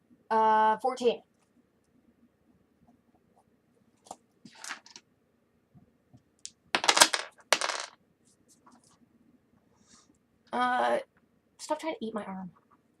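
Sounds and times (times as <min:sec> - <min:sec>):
dice clattering: 0:04.5 - 0:05.0, 0:06.4 - 0:08.0.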